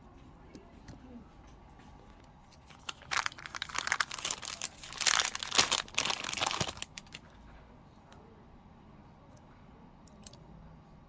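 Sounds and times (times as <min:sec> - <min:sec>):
packaging crinkling: 0:02.5 - 0:07.3.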